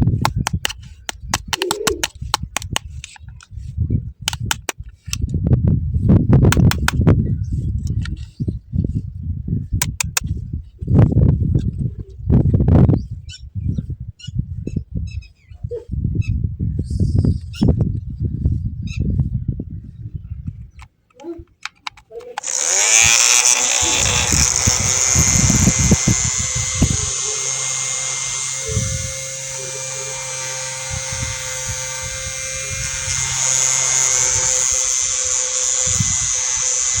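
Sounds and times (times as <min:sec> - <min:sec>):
small fan motor whirring: 0:22.4 - 0:37.0.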